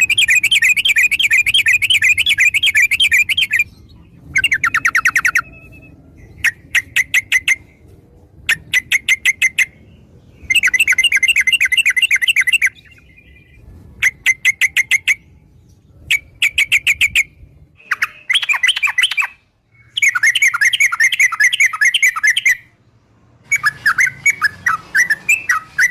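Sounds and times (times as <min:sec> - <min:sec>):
bird chattering calls: 0:00.0 - 0:07.8
bird warbling: 0:00.0 - 0:07.8.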